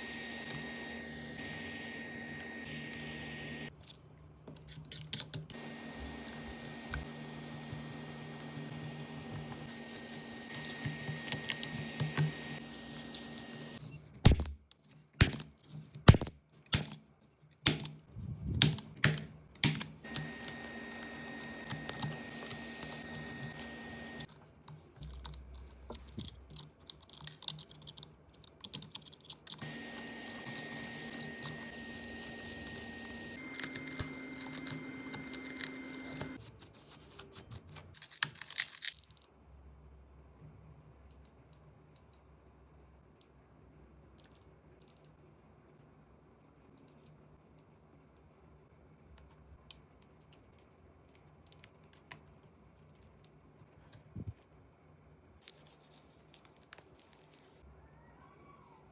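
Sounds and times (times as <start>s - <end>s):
small machine whining: 0.0s - 3.8s, 5.5s - 14.0s, 20.0s - 24.3s, 29.6s - 36.4s.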